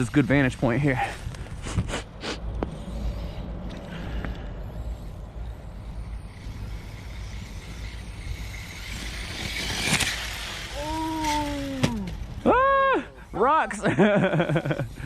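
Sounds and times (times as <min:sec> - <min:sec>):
electric rc car driving: 0:00.0 - 0:15.0
rc car crashing: 0:05.5 - 0:12.6.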